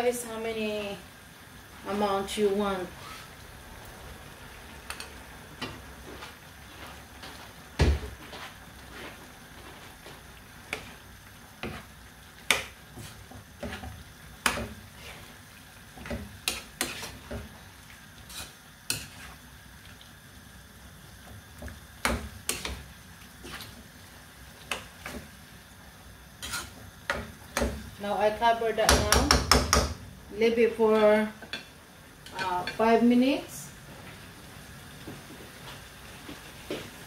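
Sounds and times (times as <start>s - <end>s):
faint sizzle of cooking pan: 0.0s - 37.0s
utensil scraping against a pan: 16.0s - 17.4s, 18.2s - 19.4s, 26.4s - 26.8s
utensil knock on pan: 28.9s - 30.0s.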